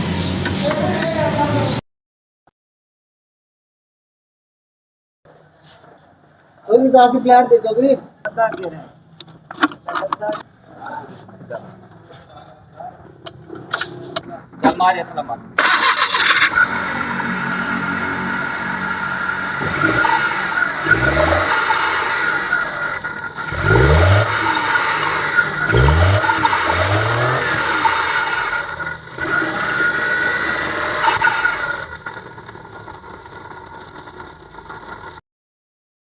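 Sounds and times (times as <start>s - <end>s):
steady high engine whine: 15.5s - 35.1s
small car engine revving: 15.6s - 35.2s.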